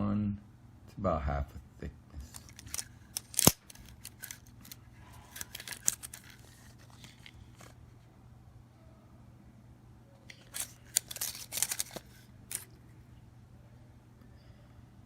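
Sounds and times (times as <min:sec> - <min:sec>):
small hard parts clicking: 0:02.2 - 0:07.3.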